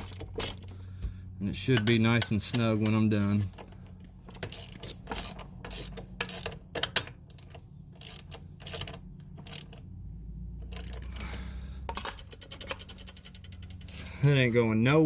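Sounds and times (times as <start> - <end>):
ratcheting wrench clicking: 0.0 - 0.7, 3.6 - 9.9, 10.6 - 13.9.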